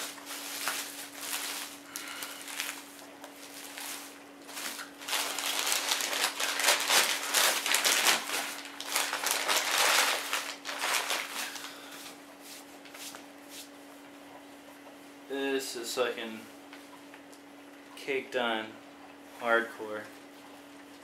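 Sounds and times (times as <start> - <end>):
rustling and crinkling handling: 0.0 - 13.7
faint steady hum: 0.0 - 21.0.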